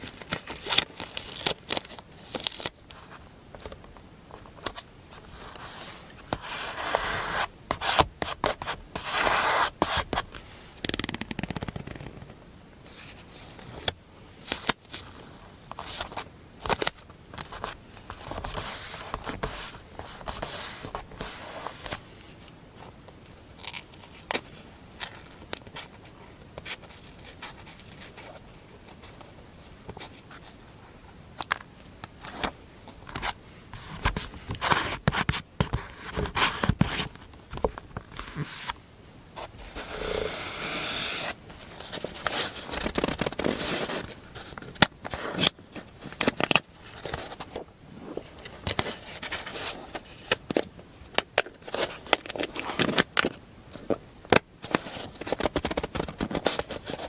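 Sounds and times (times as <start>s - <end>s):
paper rustling: 39.4s - 47.6s.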